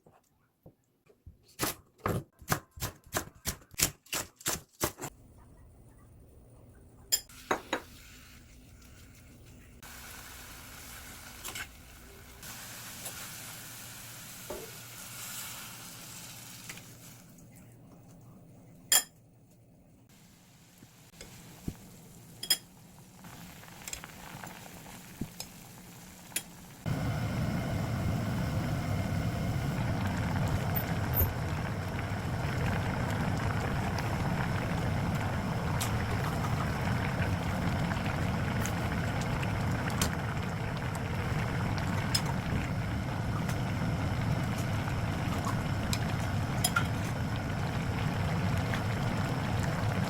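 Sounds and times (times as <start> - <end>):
stove rushing noise: 7.3 - 17.3, 20.1 - 50.0
kitchenware clinking: 18.9 - 19.2, 22.4 - 22.7.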